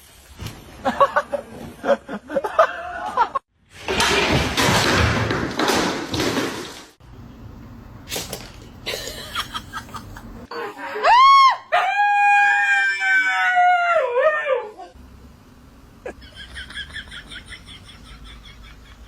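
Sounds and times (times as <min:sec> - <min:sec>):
pet howling: 0:11.0 - 0:15.0.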